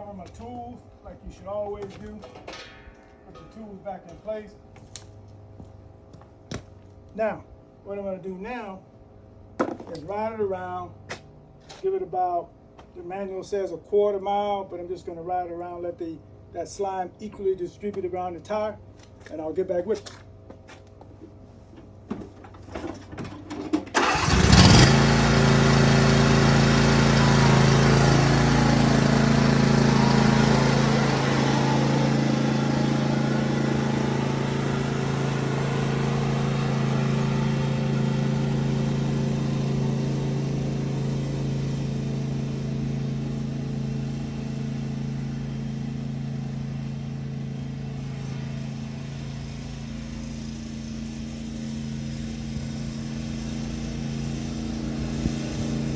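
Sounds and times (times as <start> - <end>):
lawn tractor engine running: 21.1 - 55.9.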